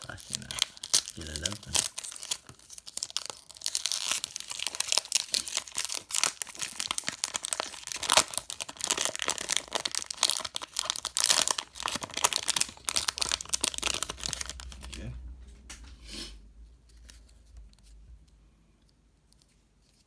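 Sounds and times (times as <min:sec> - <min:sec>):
foil wrapper tearing and crinkling: 0:00.0 - 0:15.0.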